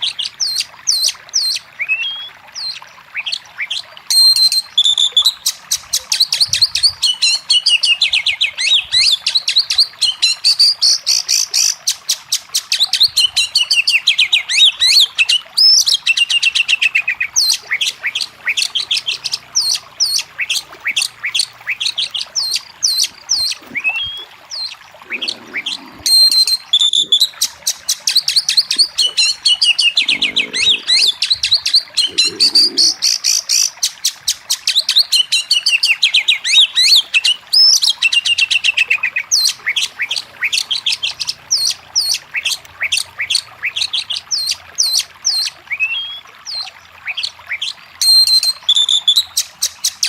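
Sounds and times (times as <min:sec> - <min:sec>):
bird singing whistled trills: 0:00.4 - 0:11.0, 0:12.7 - 0:33.3, 0:43.7 - 0:50.0.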